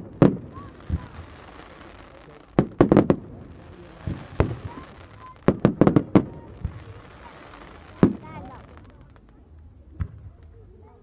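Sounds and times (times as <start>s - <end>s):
fireworks banging: 0.0s - 10.6s.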